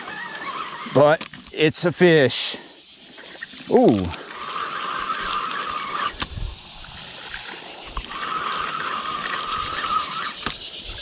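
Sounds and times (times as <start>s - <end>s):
fishing reel buzzing whir: 0.0s - 11.0s
fish splashing in water: 2.9s - 11.0s.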